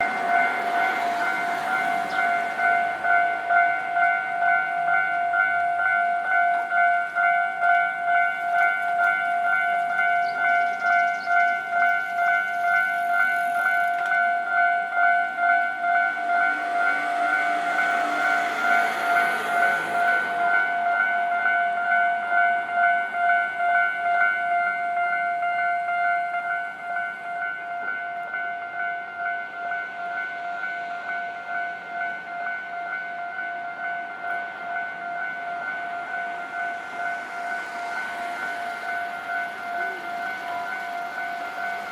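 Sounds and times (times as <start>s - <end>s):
level crossing warning bell: 0.0s - 41.9s.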